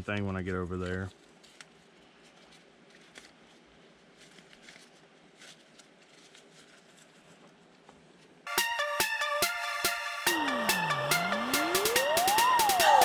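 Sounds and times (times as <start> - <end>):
electronic dance music: 8.5 - 13.0.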